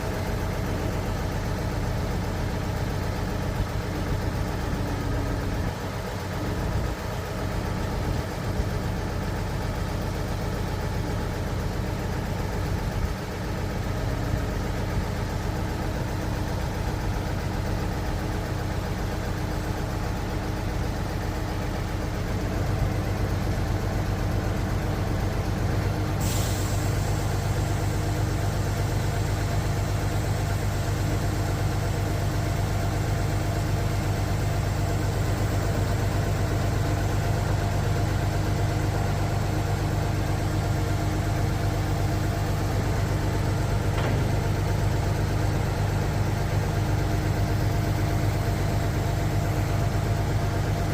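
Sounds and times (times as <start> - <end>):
truck engine idling: 0.0 - 50.9
sharp hiss of air: 26.2 - 27.6.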